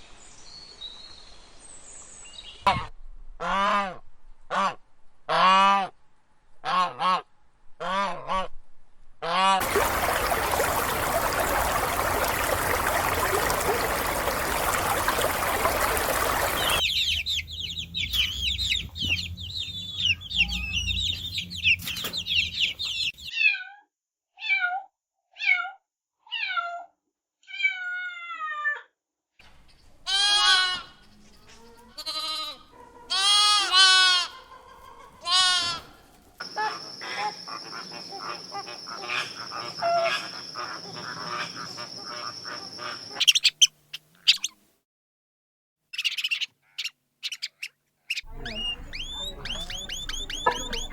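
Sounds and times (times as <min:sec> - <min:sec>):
high chirping calls: 0:46.0 - 0:50.9.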